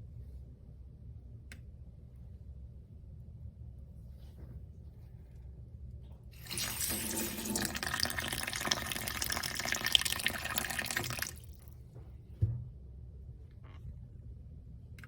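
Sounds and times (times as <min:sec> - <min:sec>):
water running from tap: 0:06.4 - 0:11.6.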